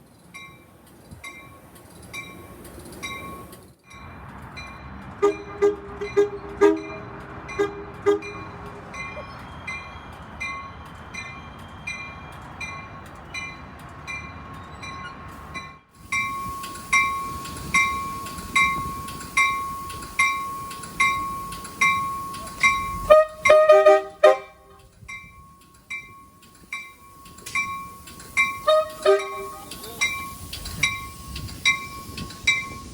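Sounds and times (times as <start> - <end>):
railroad crossing bells dinging: 0.0 - 32.9
train rumble: 0.0 - 32.9
train horn blast: 5.2 - 8.5, 23.0 - 24.8, 28.6 - 29.7.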